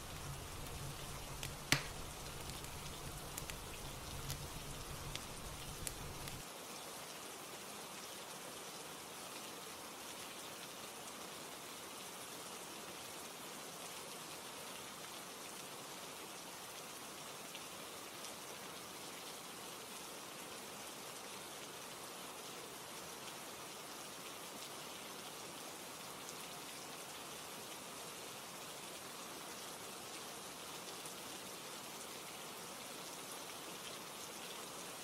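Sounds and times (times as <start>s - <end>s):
faint ticks: 0.0s - 6.4s
rain falling: 0.0s - 7.3s.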